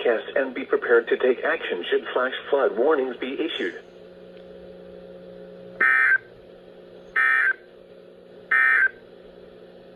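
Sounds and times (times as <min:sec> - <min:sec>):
faint steady hum: 0:00.0 - 0:09.9
digital tone bursts: 0:05.8 - 0:06.2, 0:07.2 - 0:07.6, 0:08.5 - 0:09.0.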